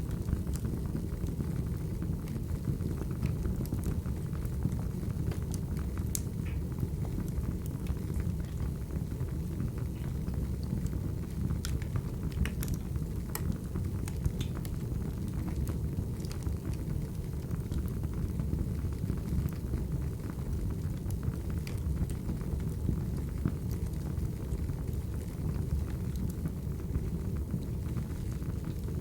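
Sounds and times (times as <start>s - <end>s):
wood fire crackling: 0.0s - 29.0s.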